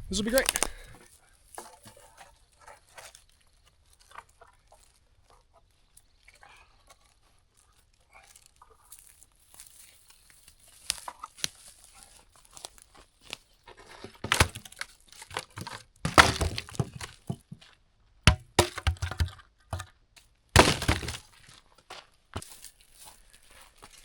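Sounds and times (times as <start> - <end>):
dry branches snapping: 0.2 - 1.0, 10.7 - 12.0, 20.6 - 21.3.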